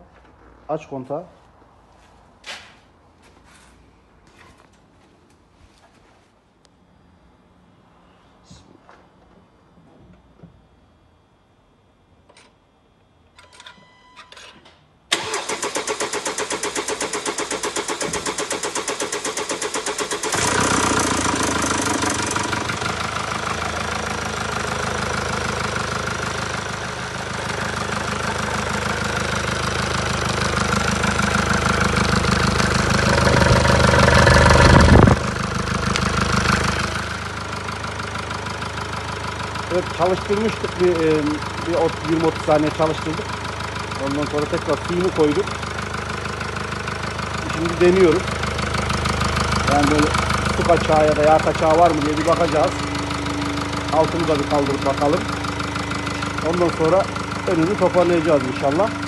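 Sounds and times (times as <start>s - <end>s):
short beeps: 13.4s - 14.4s
starter motor cranking: 15.1s - 23.2s
diesel engine running: 15.1s - 59.0s.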